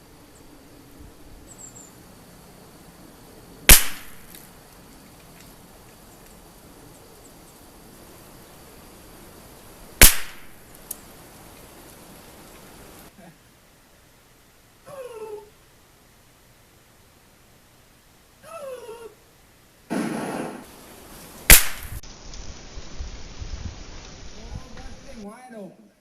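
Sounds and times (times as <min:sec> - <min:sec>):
rifle shots: 0:03.7 - 0:04.4, 0:10.0 - 0:10.6, 0:21.5 - 0:22.0.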